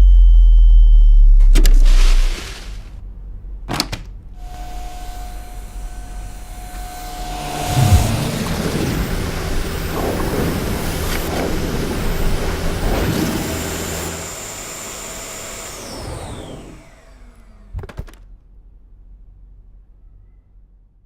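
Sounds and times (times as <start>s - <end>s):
vacuum cleaner motor running: 4.4s - 17.8s.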